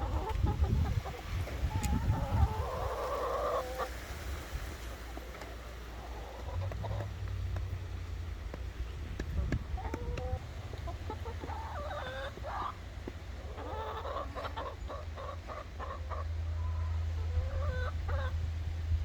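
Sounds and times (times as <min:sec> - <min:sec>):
chickens clucking: 0:00.0 - 0:07.9, 0:08.5 - 0:18.6
steady low rumble: 0:05.6 - 0:13.6, 0:14.2 - 0:19.0.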